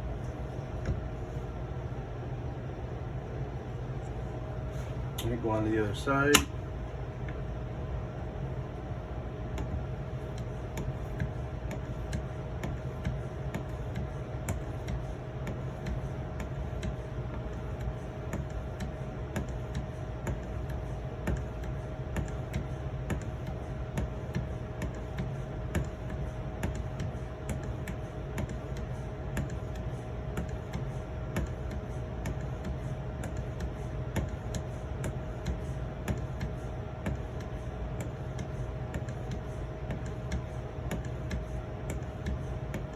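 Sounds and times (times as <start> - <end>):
steady low hum: 0.0 - 42.9.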